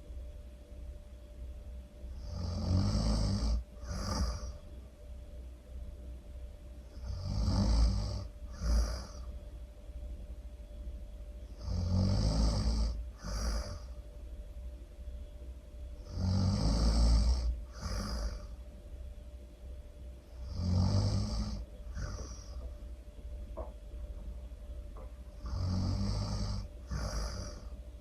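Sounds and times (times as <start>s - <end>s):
person snoring loudly: 2.2s - 4.6s, 6.9s - 9.3s, 11.6s - 14.0s, 16.0s - 18.6s, 20.4s - 22.6s, 25.4s - 27.8s.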